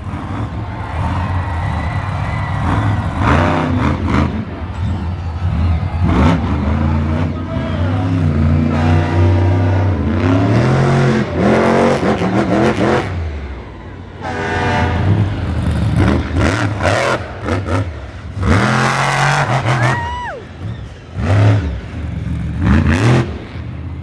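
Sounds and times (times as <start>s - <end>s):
monster truck engine revving: 0.0s - 24.0s.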